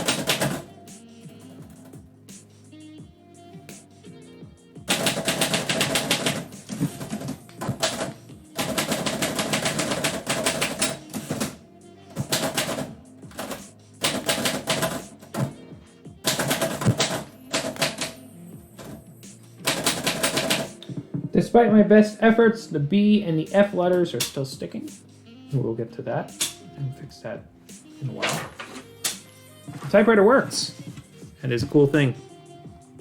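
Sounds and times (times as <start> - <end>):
typewriter keystrikes: 0.0 - 0.7, 4.9 - 15.5, 16.2 - 18.2, 19.7 - 20.8
faint background music: 0.0 - 33.0.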